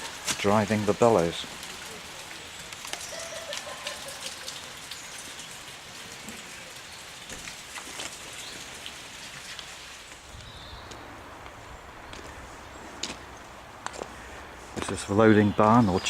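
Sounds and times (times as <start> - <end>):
raindrops ticking: 0.0 - 12.3
rain pattering: 0.0 - 16.0.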